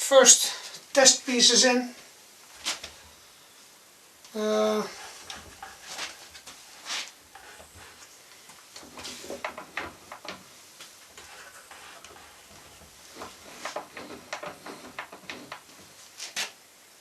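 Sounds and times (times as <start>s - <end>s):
clicks and knocks on workbench: 8.8s - 10.5s, 11.2s - 15.8s.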